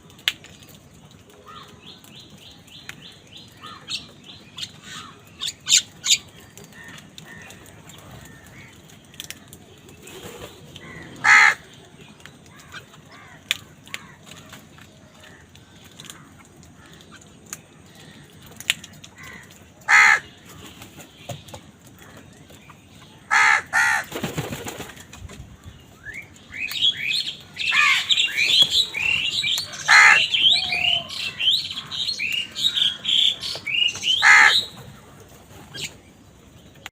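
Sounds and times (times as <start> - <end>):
crows cawing: 10.8 - 11.8, 18.0 - 20.3, 23.3 - 24.1, 27.6 - 28.3, 29.0 - 34.8
small birds chirping: 24.2 - 36.9.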